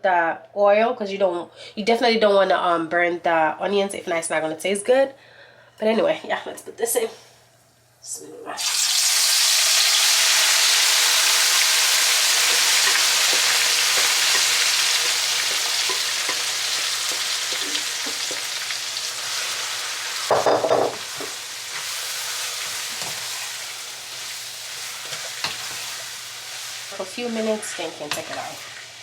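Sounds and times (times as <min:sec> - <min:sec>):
onions sizzling in oil: 0:08.6 - 0:29.0.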